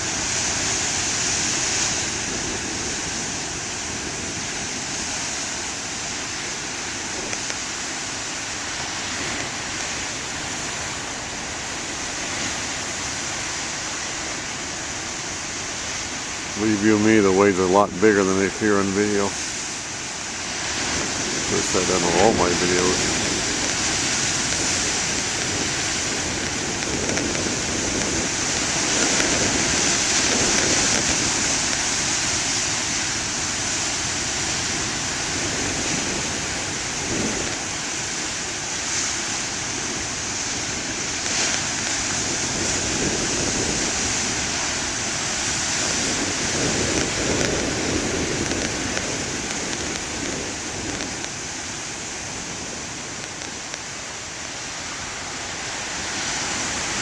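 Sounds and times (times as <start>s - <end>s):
ocean surf breaking: 0.0s - 57.0s.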